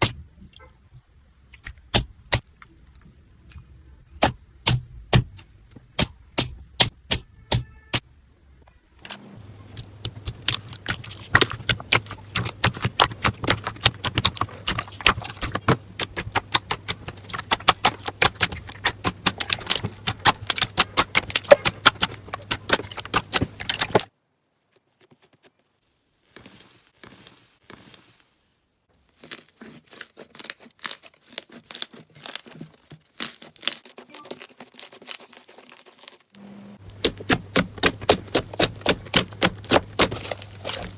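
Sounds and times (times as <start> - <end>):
slime crackling and popping: 9.5 - 24.1, 29.2 - 40.9.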